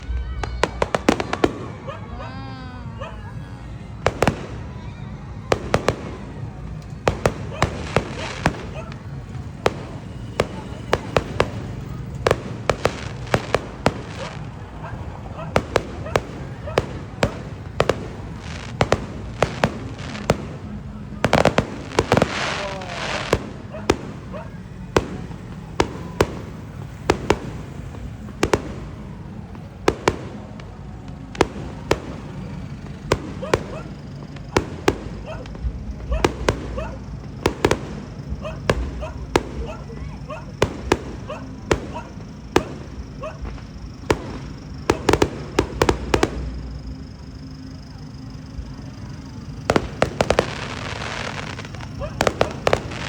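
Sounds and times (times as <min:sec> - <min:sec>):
fireworks bangs: 0:00.0 - 0:53.0.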